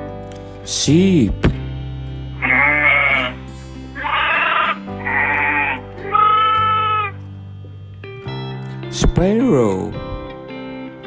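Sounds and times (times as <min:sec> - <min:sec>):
background music: 0:00.0 - 0:11.0
sheep bleating: 0:02.4 - 0:07.2.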